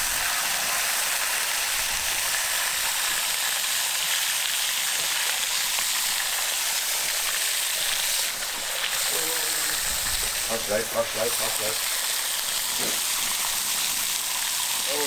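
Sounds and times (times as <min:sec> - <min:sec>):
bacon sizzling on a griddle: 0:00.0 - 0:15.0
fat popping and spitting: 0:12.4 - 0:14.4.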